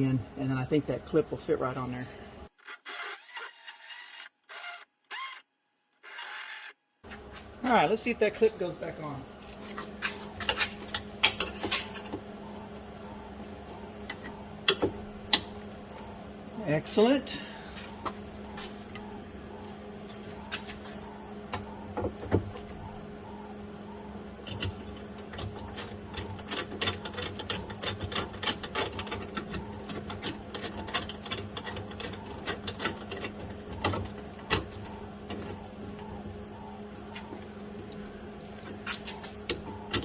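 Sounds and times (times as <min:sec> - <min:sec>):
steady low hum: 0:00.0 - 0:02.5, 0:07.0 - 0:40.0
small parts and tools clicking: 0:20.4 - 0:40.0.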